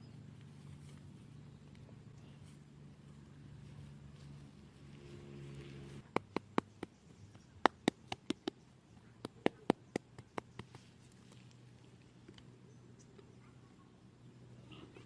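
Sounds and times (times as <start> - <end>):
faint low hum: 0.0 - 15.0
sharp irregular taps: 6.0 - 7.0, 7.6 - 10.9.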